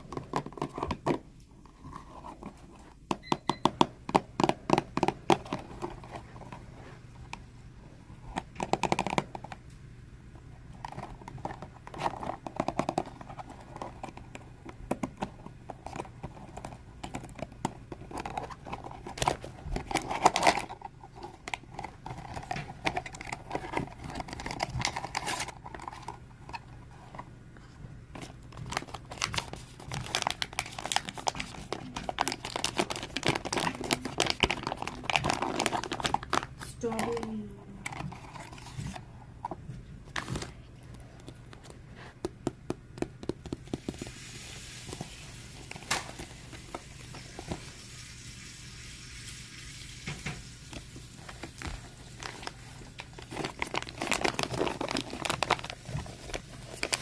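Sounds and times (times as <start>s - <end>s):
fingernails tapping on packaging: 3.1s - 6.2s, 8.3s - 9.6s, 10.8s - 26.2s, 42.2s - 44.1s
wrapping crinkling and tearing: 15.3s - 27.2s, 28.2s - 39.1s, 43.6s - 48.3s, 49.1s - 57.0s.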